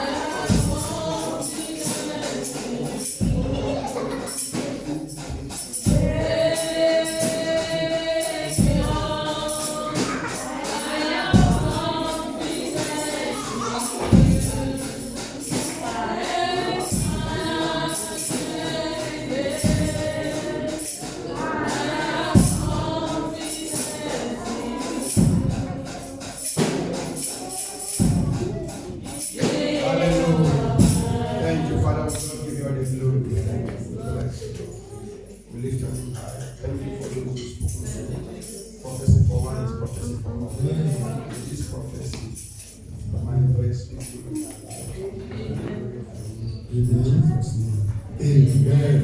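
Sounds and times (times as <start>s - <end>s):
bass drum: 0.0s - 1.4s, 3.1s - 4.0s, 5.3s - 10.4s, 11.3s - 12.7s, 14.0s - 15.7s, 22.3s - 23.3s, 25.1s - 25.9s, 28.0s - 32.4s
steady beat: 0.0s - 32.6s
congregation singing in chorus: 0.0s - 42.7s, 43.6s - 49.0s
tambourine jingles: 0.0s - 49.0s.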